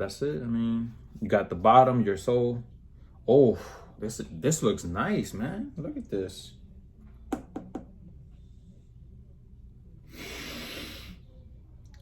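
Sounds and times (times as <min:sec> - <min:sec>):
person inhaling breathily: 0:10.1 - 0:11.2.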